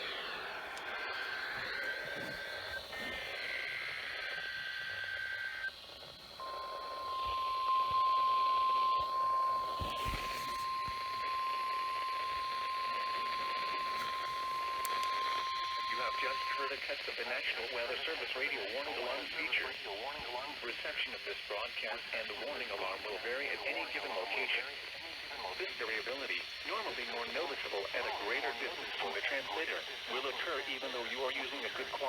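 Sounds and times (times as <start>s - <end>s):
steady warning alarm tone: 0.0s - 5.7s, 6.4s - 16.8s
radio static hiss: 0.0s - 32.0s.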